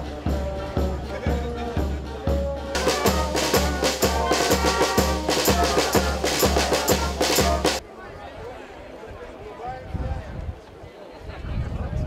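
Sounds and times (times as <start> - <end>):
upbeat music with heavy drums: 0.0 - 7.8.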